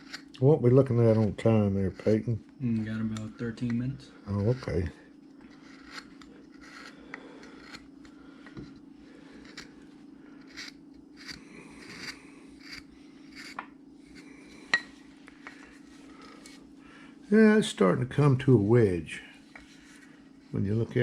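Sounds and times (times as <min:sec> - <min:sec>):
gouge paring wood: 0:00.0 - 0:14.3
faint steady hum: 0:00.0 - 0:21.0.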